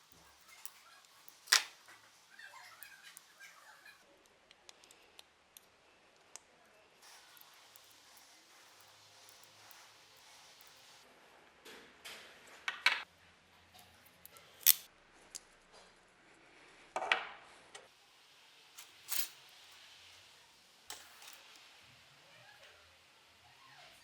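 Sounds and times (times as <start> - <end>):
tools clicking and clacking: 0.0 - 1.8, 18.8 - 19.4, 20.9 - 21.6.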